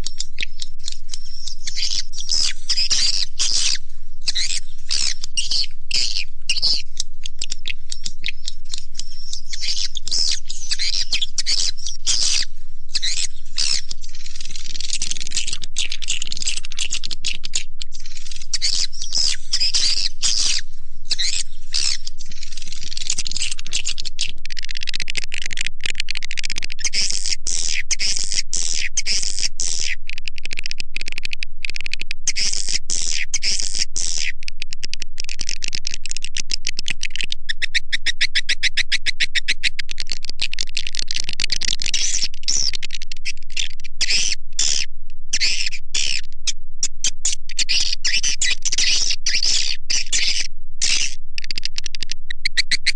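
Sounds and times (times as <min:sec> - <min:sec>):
high-pitched bird chirping: 0:00.0 - 0:30.0, 0:31.7 - 0:52.9
rapid clicking pulses: 0:21.1 - 0:26.9.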